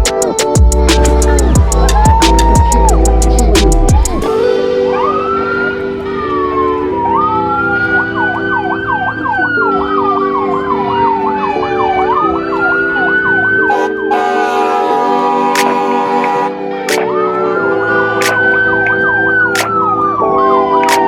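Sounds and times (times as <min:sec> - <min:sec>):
emergency vehicle siren: 0:01.1 - 0:03.4, 0:04.2 - 0:21.0
vehicle horns honking: 0:13.6 - 0:19.3.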